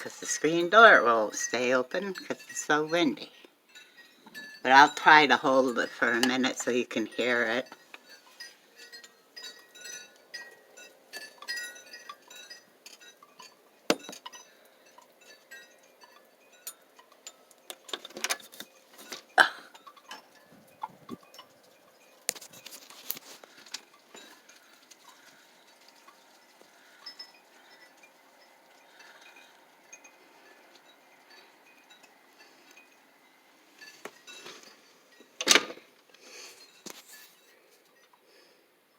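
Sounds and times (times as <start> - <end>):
ice clinking on branches: 0.0 - 38.2.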